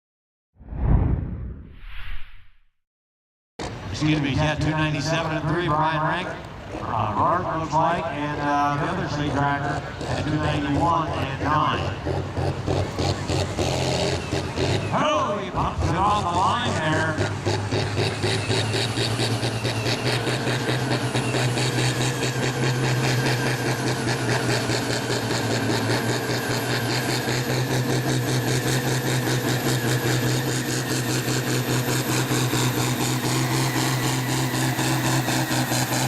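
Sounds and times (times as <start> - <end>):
tractor engine running hard: 3.6 - 36.0.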